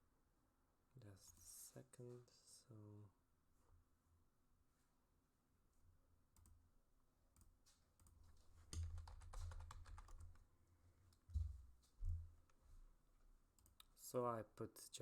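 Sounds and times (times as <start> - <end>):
typing on a computer keyboard: 7.4 - 10.4.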